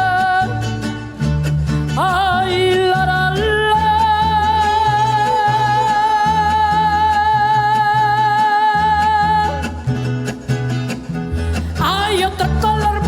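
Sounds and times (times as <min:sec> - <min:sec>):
strummed guitars and bass: 0:00.0 - 0:13.0
woman singing high note: 0:04.2 - 0:07.6.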